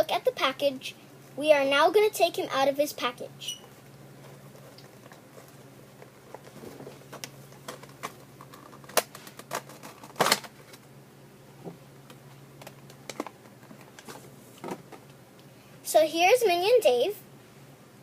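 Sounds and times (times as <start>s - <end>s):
packaging snaps: 7.1s - 10.8s.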